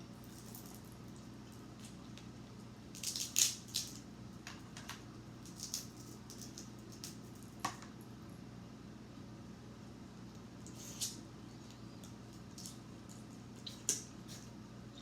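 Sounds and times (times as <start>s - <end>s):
faint steady hum: 0.0s - 15.0s
crab shells cracking: 2.9s - 4.0s, 5.4s - 7.2s.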